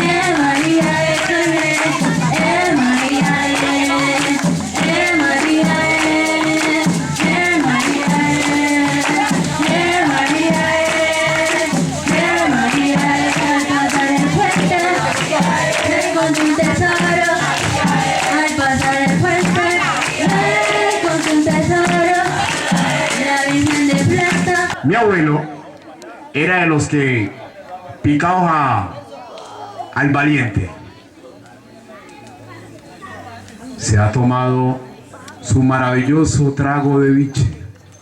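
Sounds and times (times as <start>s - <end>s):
shaken percussion beat: 0.0s - 24.9s
music with singing voices: 0.0s - 25.2s.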